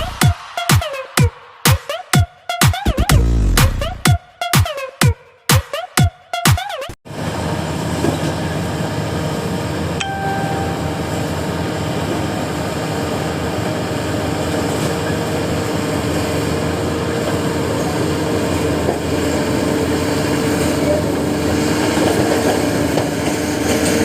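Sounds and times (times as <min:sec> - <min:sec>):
intro music: 0:00.0 - 0:04.2, 0:10.0 - 0:11.6
short single tone: 0:10.0 - 0:11.5.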